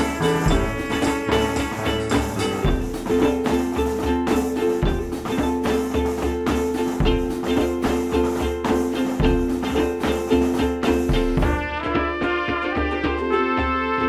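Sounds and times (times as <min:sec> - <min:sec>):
pulsing bass: 0:00.0 - 0:03.3
drums: 0:00.0 - 0:14.0
plucked pitched notes: 0:00.0 - 0:14.0.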